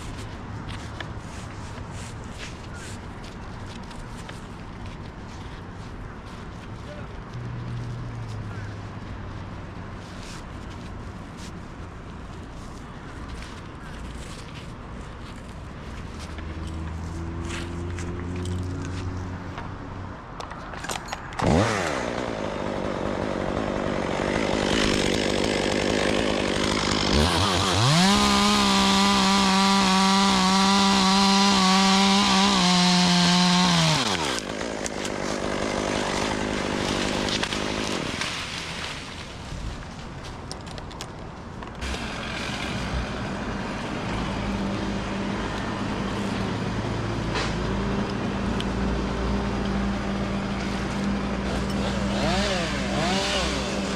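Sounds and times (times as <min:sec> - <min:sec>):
chainsaw revving: 0:21.4 - 0:38.8, 0:41.8 - 0:46.2, 0:49.3 - 0:53.9.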